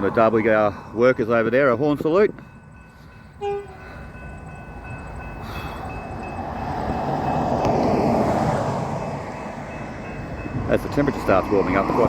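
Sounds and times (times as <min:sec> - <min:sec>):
railcar passing: 0:00.0 - 0:12.0
train horn toot: 0:03.4 - 0:04.0.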